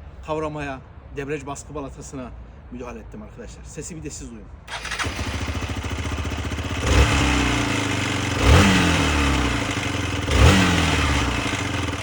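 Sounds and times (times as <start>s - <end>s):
engine rattling noise: 4.7s - 12.0s
motorcycle engine idling and revving: 4.7s - 12.0s.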